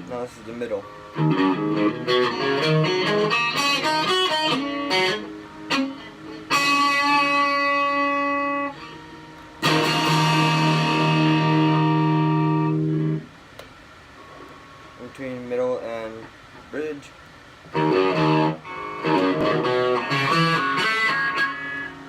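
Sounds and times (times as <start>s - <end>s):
electric guitar notes and chords: 0.8s - 13.3s, 17.7s - 22.0s.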